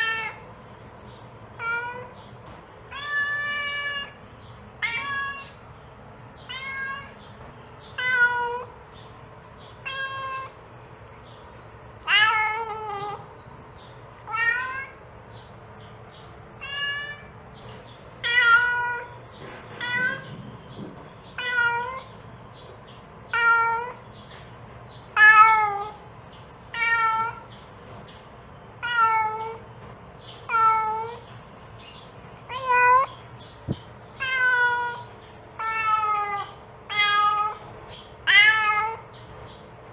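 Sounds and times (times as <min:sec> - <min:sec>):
cat meowing: 0:00.0 - 0:00.5, 0:01.6 - 0:02.2, 0:02.9 - 0:04.2, 0:04.8 - 0:05.6, 0:06.4 - 0:08.8, 0:09.7 - 0:10.6, 0:12.0 - 0:13.3, 0:14.2 - 0:15.0, 0:16.6 - 0:17.4, 0:18.2 - 0:19.2, 0:19.8 - 0:20.4, 0:21.2 - 0:22.2, 0:23.3 - 0:24.0, 0:25.1 - 0:26.0, 0:26.7 - 0:27.5, 0:28.8 - 0:29.7, 0:30.4 - 0:31.2, 0:32.5 - 0:33.2, 0:34.1 - 0:39.1.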